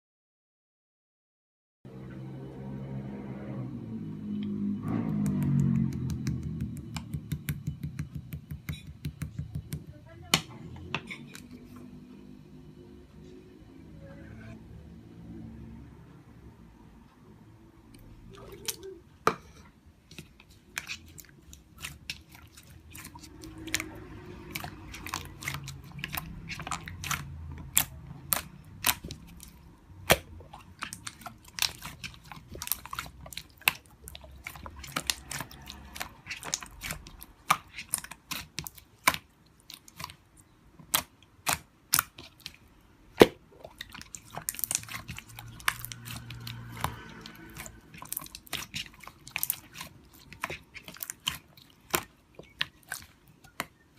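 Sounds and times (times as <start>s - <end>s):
crunchy chewing: 30.6s - 42.7s, 43.7s - 53.6s.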